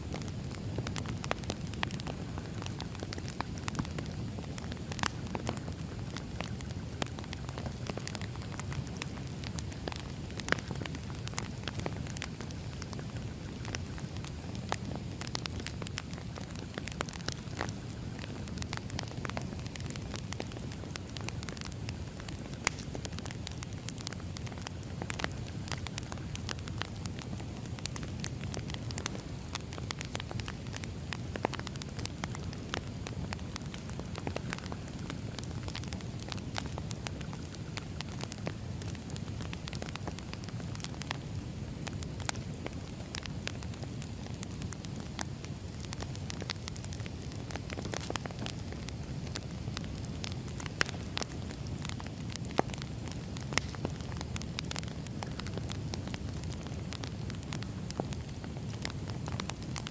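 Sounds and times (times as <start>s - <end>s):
burning logs popping and snapping: 0.0s - 59.9s
wood fire crackling: 0.0s - 59.9s.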